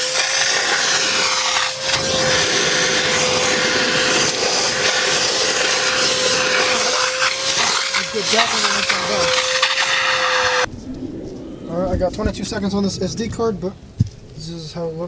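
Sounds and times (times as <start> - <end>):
shop vacuum running: 0.0 - 10.7.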